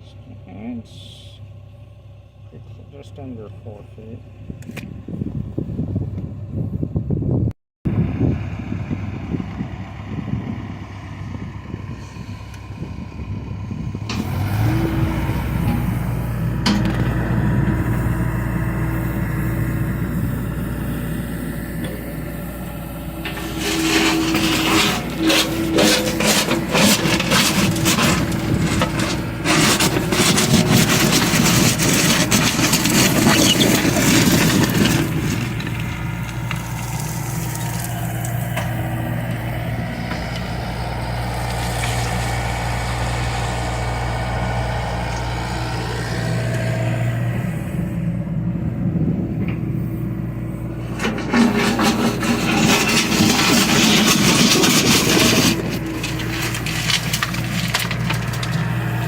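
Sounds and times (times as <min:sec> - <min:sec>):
excavator diesel engine running: 0:08.0 - 0:59.0
bucket scraping and knocking ground: 0:14.1 - 0:20.7, 0:21.6 - 0:42.7, 0:50.8 - 0:59.0.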